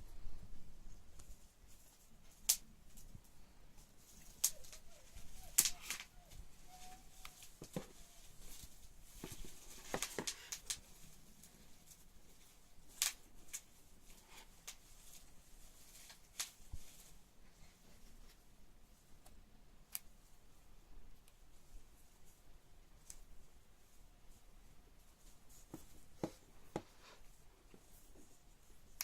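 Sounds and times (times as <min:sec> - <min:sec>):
cardboard packaging rustling: 0:04.1 - 0:11.3.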